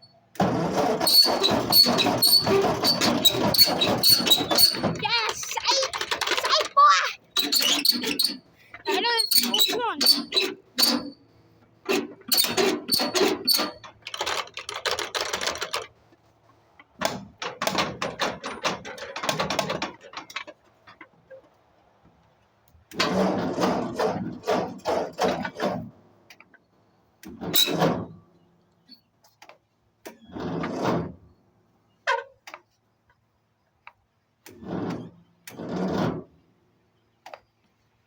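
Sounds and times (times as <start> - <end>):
rapid clicking and rattling: 1.0 - 6.7, 12.4 - 15.9.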